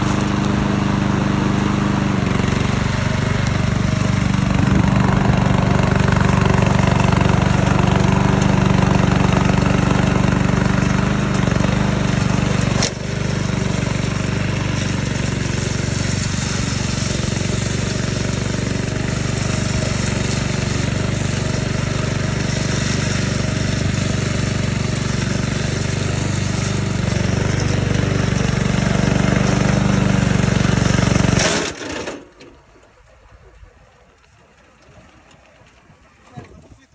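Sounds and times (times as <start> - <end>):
lawn mower engine running: 0.0 - 36.9.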